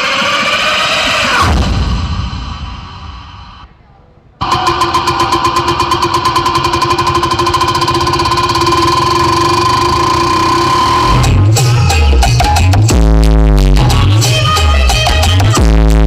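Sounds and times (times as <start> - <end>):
music: 0.0 - 3.6, 9.9 - 16.0
engine-like buzzing drone: 4.4 - 13.1.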